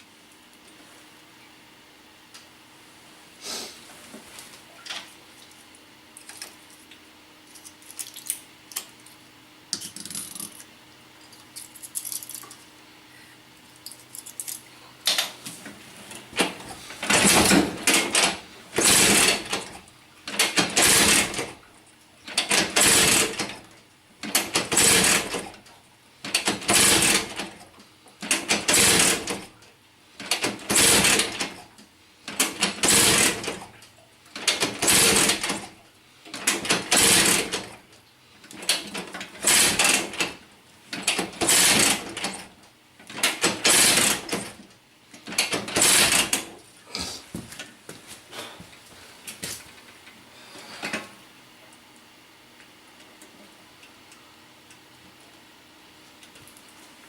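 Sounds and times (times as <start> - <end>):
two-stroke engine cranking: 17.0 - 19.7, 20.3 - 21.5, 22.3 - 23.5, 24.3 - 25.4, 26.3 - 27.6, 28.2 - 29.4, 30.2 - 31.6, 32.4 - 33.6, 34.4 - 35.7, 36.4 - 37.7, 38.6 - 40.3, 41.0 - 42.4, 43.1 - 44.5, 45.4 - 46.5.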